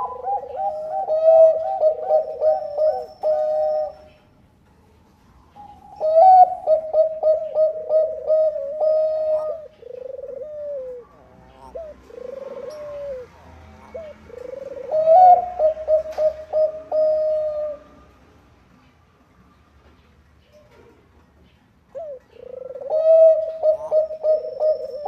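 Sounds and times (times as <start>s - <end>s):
dove cooing: 0.0s - 4.3s, 5.6s - 18.0s, 21.9s - 25.0s.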